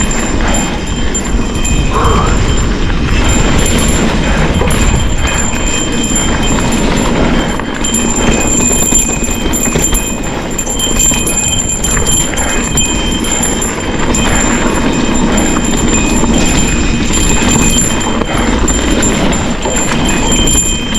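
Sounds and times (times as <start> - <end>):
bike rattling: 0.0 - 20.9
cowbell clanking: 0.0 - 20.9
tyres on trail surface: 0.0 - 20.9.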